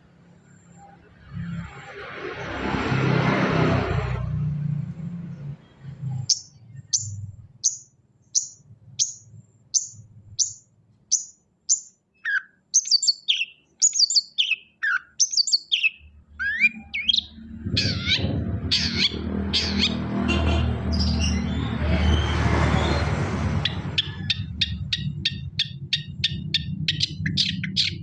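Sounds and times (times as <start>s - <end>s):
shrike calling: 6.2s - 20.1s, 23.6s - 28.0s.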